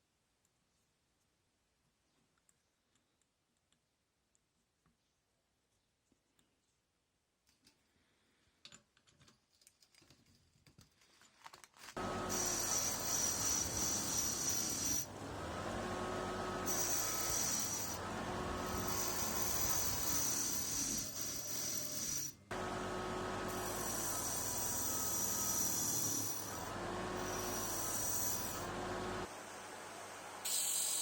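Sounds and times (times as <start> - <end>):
washing machine motor whining: 12.0 - 31.0.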